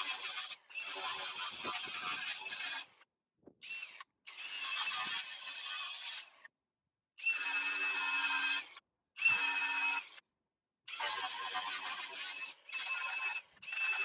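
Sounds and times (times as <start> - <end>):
small power tool grinding: 0.0 - 3.0, 3.6 - 6.5, 10.9 - 14.0.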